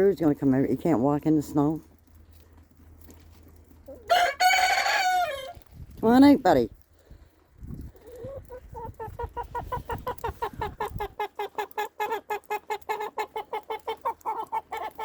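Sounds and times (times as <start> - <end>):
chicken clucking: 7.8 - 15.0.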